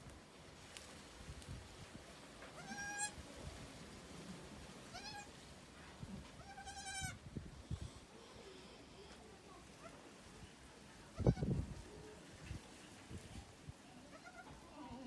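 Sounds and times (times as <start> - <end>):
goat kid bleating: 2.6 - 3.2, 4.9 - 5.3, 6.4 - 7.2, 14.1 - 15.0.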